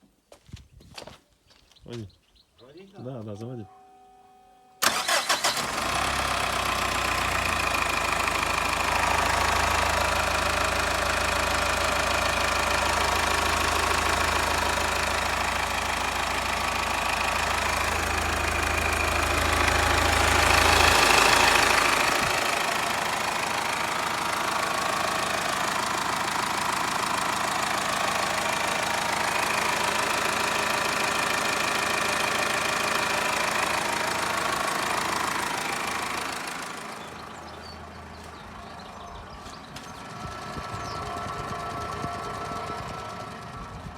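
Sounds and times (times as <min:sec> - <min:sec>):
starter motor cranking: 0:04.8 - 0:12.2
diesel engine idling: 0:04.8 - 0:43.9.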